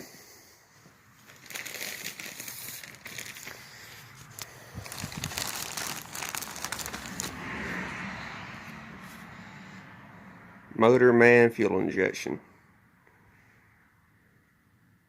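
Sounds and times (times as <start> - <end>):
crinkling and rustling handling noise: 0.8 - 7.4.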